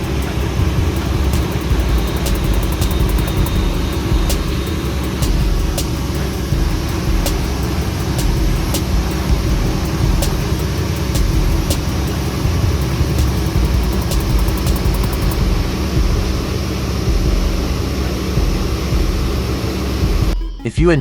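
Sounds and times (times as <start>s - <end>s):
heavy vehicle engine rumbling: 0.0s - 20.4s
sharp clicks: 13.2s - 15.4s.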